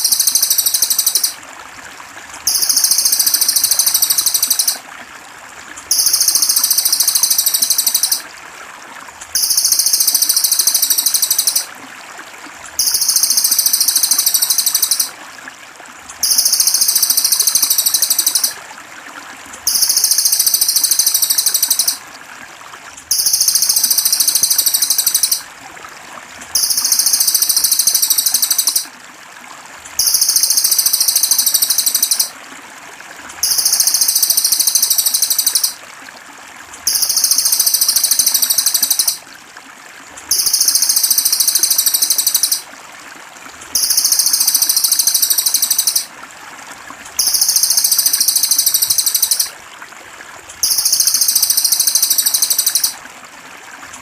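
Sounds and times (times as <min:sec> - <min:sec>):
bird buzzy trill: 0:00.0 - 0:01.4, 0:02.5 - 0:04.8, 0:05.9 - 0:08.2, 0:09.4 - 0:11.7, 0:12.8 - 0:15.1, 0:16.2 - 0:18.6, 0:19.7 - 0:22.0, 0:23.1 - 0:25.4, 0:26.6 - 0:28.9, 0:30.0 - 0:32.4, 0:33.4 - 0:35.8, 0:43.8 - 0:46.1, 0:50.6 - 0:53.0
trickling water: 0:00.0 - 0:54.0.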